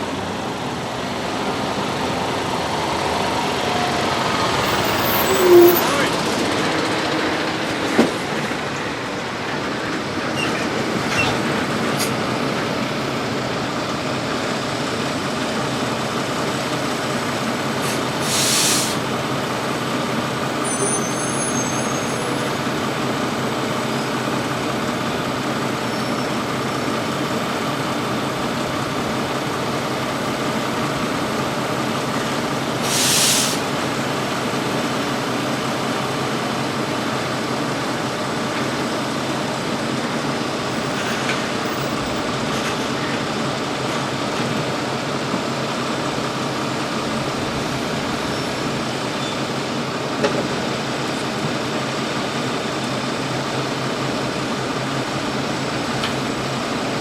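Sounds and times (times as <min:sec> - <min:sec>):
heavy farm machinery running: 0:00.0 - 0:20.6, 0:22.4 - 0:57.0
air brakes hissing: 0:03.6 - 0:07.2, 0:17.8 - 0:19.0, 0:32.8 - 0:33.7.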